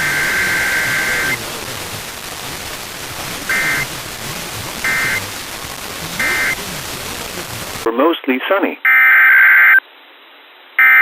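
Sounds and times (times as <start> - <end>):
radio static hiss: 0.0 - 9.0
two-tone electronic alert beeps: 3.5 - 3.8, 10.8 - 11.0.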